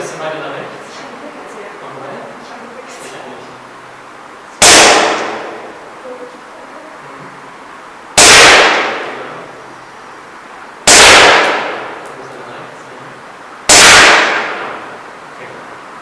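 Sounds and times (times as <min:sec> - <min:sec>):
airsoft pistol shots echoing: 0:04.6 - 0:05.8, 0:08.2 - 0:09.3, 0:10.9 - 0:12.1, 0:13.7 - 0:14.9.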